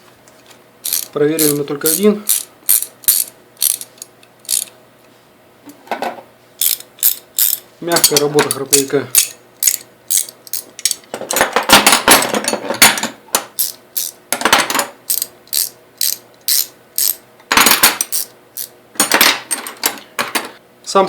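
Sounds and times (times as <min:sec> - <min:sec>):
ratchet wrench clicking: 0:00.8 - 0:04.7, 0:06.6 - 0:11.0, 0:13.6 - 0:14.2, 0:15.1 - 0:17.2, 0:18.0 - 0:18.7.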